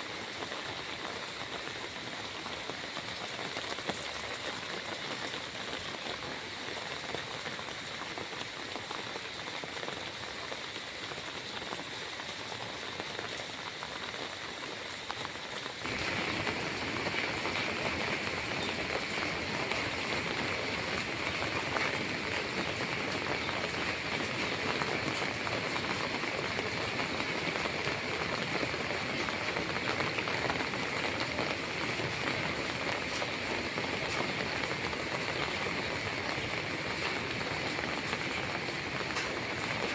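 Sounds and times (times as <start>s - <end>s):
rushing water: 15.8s - 39.9s.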